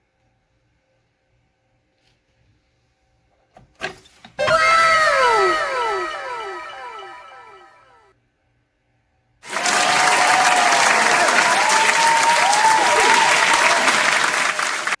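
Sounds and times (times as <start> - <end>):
applause: 9.4 - 15.0.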